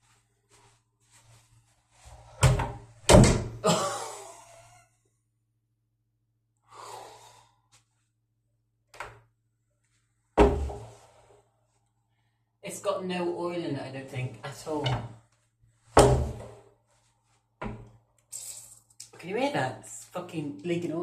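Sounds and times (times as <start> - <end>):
door thump: 2.4 - 3.6.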